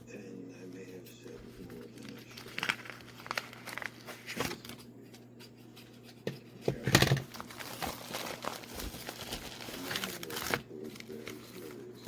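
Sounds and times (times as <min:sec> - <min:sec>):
faint low hum: 0:00.0 - 0:12.0
packaging rustling and crinkling: 0:01.4 - 0:04.9, 0:06.8 - 0:12.0.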